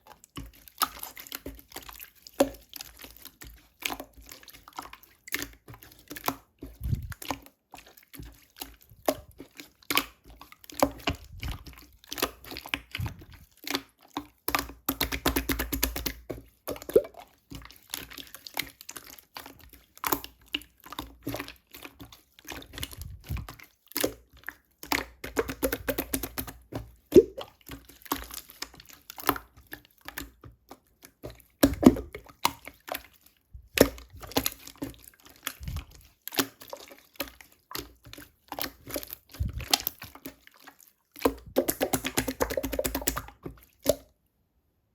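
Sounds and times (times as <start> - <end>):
slime squished by hand: 0.2 - 44.1
air-bubble pops: 6.8 - 7.2, 27.1 - 27.4, 31.6 - 32.2, 39.4 - 39.8, 41.3 - 43.2.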